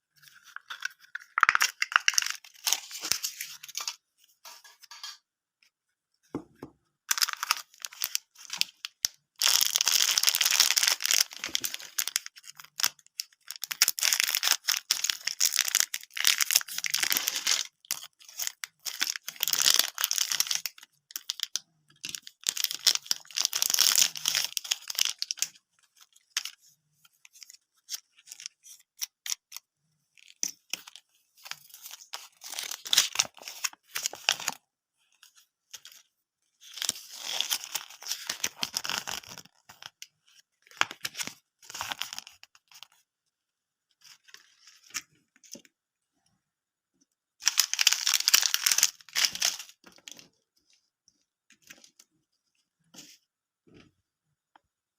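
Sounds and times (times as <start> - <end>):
plastic wrappers crinkling: 0.2 - 5.0, 7.1 - 26.6, 30.2 - 34.6, 47.4 - 50.3.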